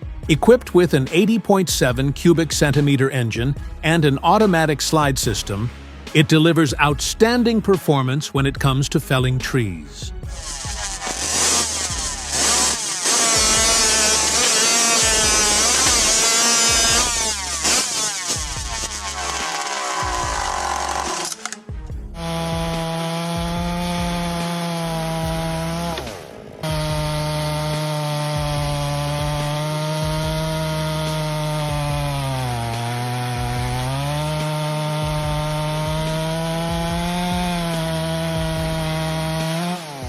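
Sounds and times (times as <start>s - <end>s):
chainsaw cutting wood: 10.2s - 40.0s.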